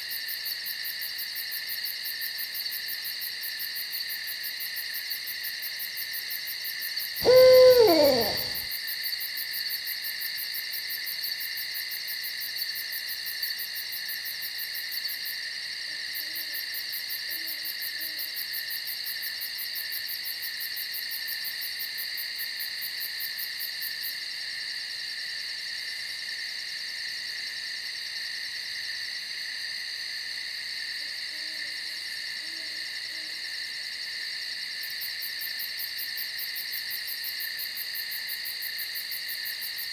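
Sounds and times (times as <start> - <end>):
night insects chorus: 7.2 - 8.6
owl hooting: 7.2 - 8.7.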